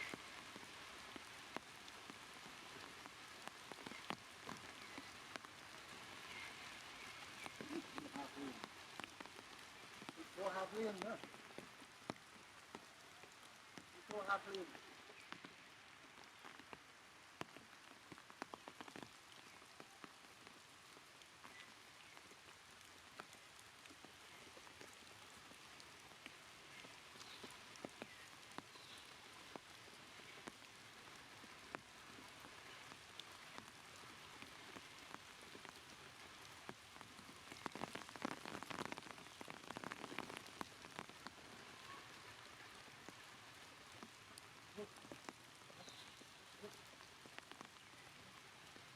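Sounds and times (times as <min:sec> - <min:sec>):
rain patter: 0:00.0 - 0:48.9
scattered drips: 0:00.1 - 0:19.8.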